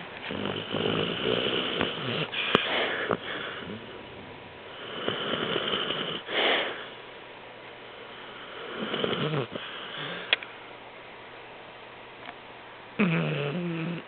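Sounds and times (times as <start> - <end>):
dog snoring: 0.2 - 6.9, 8.1 - 10.3, 13.0 - 14.0.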